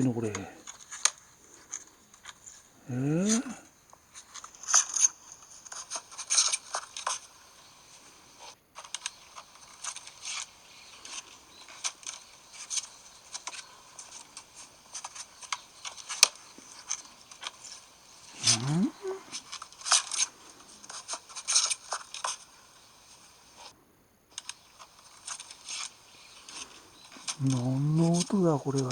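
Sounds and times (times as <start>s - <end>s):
phone speaker crackling glitch noise: 18.4s - 19.4s, 27.0s - 28.9s.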